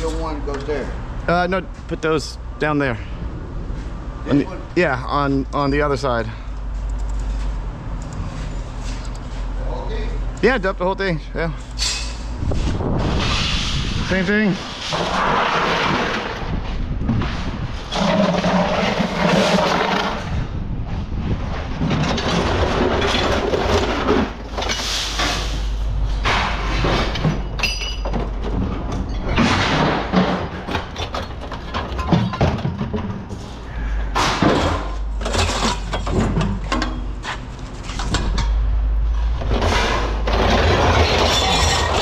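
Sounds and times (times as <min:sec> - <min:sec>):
scrap metal clanking onto pile: 0:21.8 - 0:33.5, 0:34.2 - 0:37.1, 0:39.5 - 0:42.0.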